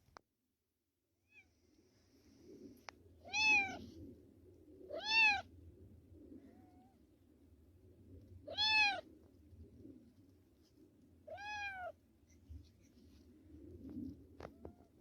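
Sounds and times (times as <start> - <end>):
cat meowing: 3.3 - 3.8, 4.9 - 5.5, 8.5 - 9.0, 11.3 - 12.0.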